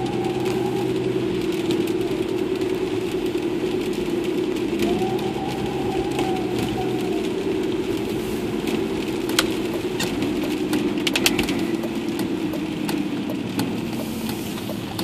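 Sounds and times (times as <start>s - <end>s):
turbo whistling: 0.0s - 1.2s, 4.8s - 7.6s
car engine running: 0.0s - 15.0s.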